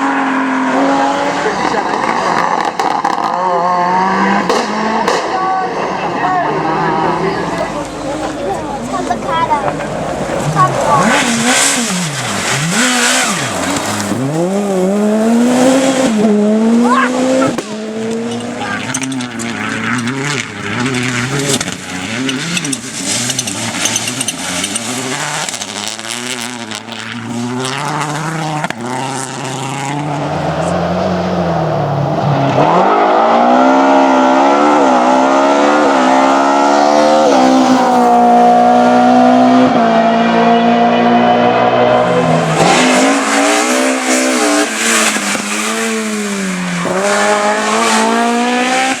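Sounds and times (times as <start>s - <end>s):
rally car engine revving: 0.0s - 49.0s
tyre noise: 0.0s - 49.0s
exhaust crackle: 4.4s - 32.8s.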